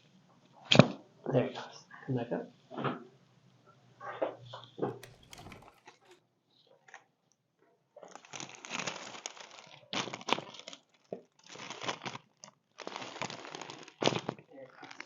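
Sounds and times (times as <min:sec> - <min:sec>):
crinkling and rustling on table: 0:04.9 - 0:06.2.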